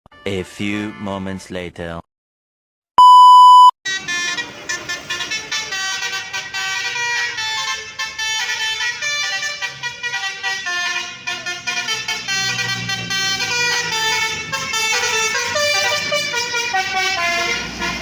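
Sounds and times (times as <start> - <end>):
bus engine rumble: 3.9 - 18.0
multi-tone bus horn melody: 3.9 - 18.0.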